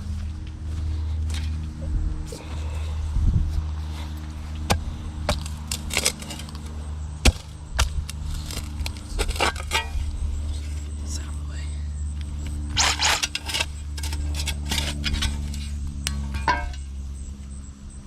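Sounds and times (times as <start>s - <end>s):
low engine hum: 0.0s - 18.0s
shovel striking soil: 4.6s - 10.2s, 12.7s - 16.9s.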